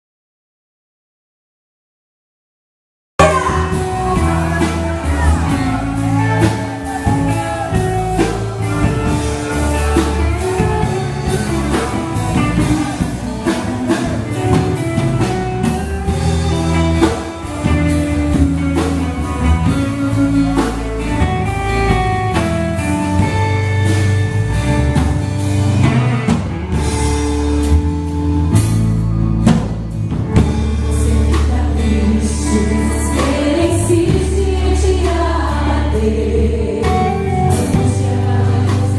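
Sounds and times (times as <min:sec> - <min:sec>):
people singing: 0:03.2 - 0:18.4, 0:30.5 - 0:38.9
band playing gospel music: 0:03.2 - 0:38.9.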